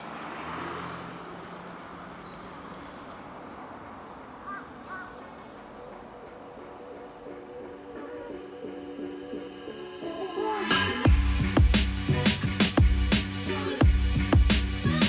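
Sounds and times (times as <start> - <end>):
vehicle engine hum: 0.0 - 8.3
road traffic noise: 0.0 - 15.0
crow cawing: 4.0 - 5.9
music: 6.6 - 15.0.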